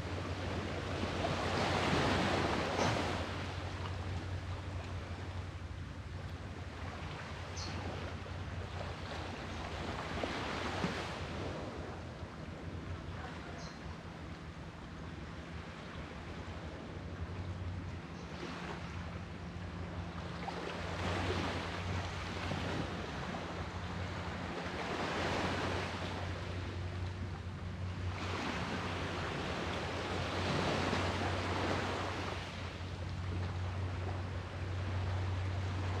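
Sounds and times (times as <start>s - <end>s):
steady low hum: 0.0s - 36.0s
sea waves washing in: 18.4s - 36.0s.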